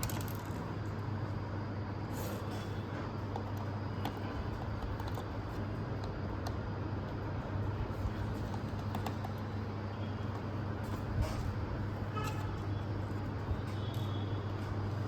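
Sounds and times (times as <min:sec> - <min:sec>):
road traffic: 0:00.0 - 0:15.0
steady low hum: 0:00.0 - 0:15.0
faint vehicle horn toot: 0:12.1 - 0:12.8, 0:13.5 - 0:14.5.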